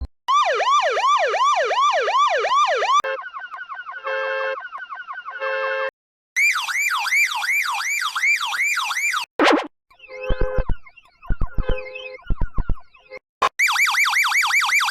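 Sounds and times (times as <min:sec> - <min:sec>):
car alarm alternating tones: 0:00.3 - 0:09.3, 0:09.9 - 0:14.9
electronic police siren yelp: 0:00.3 - 0:09.3, 0:13.5 - 0:14.9.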